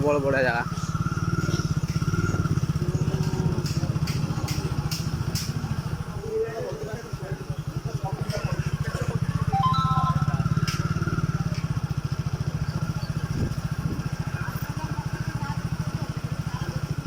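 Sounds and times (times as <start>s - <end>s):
small vehicle engine running: 0.0s - 17.0s.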